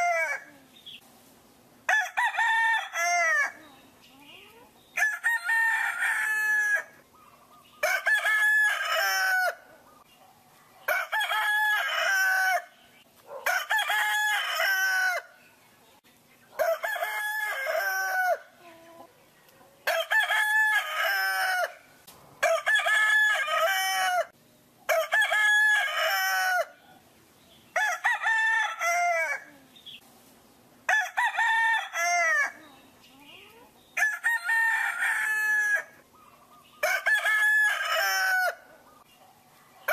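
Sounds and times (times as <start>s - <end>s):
rooster crowing: 0.0s - 0.5s, 1.9s - 3.6s, 5.0s - 7.0s, 7.8s - 9.7s, 10.9s - 12.8s, 13.4s - 15.4s, 16.6s - 18.6s, 19.8s - 26.8s, 27.8s - 29.5s, 30.9s - 32.6s, 34.0s - 36.0s, 36.8s - 38.9s.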